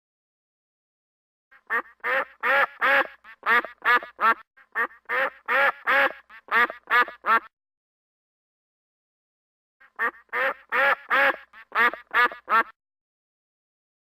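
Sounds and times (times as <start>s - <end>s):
duck quacking: 1.6s - 7.5s, 9.8s - 12.8s.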